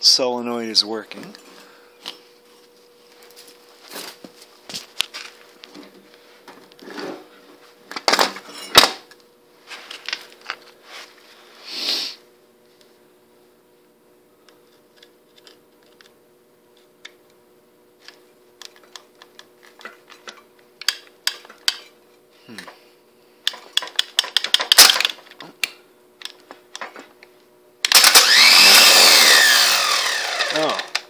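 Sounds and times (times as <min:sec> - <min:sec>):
starter motor whirring: 0:27.9 - 0:31.0.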